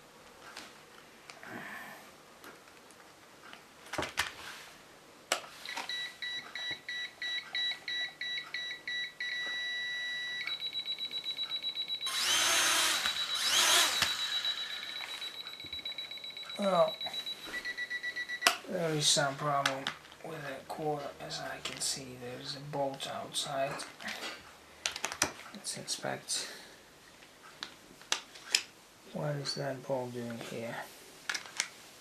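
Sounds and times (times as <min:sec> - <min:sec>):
high-pitched electronic beeping: 0:05.7 - 0:18.5.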